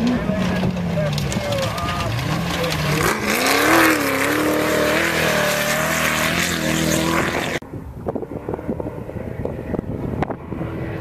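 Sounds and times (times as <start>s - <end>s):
race vehicle engine revving hard: 2.0s - 7.6s.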